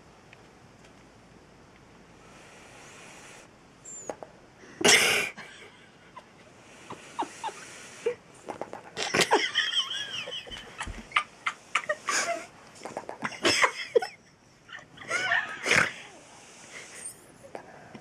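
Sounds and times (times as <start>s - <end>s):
puppy snoring: 2.6s - 4.2s
rasping breath with squeaky whistling: 16.6s - 17.4s.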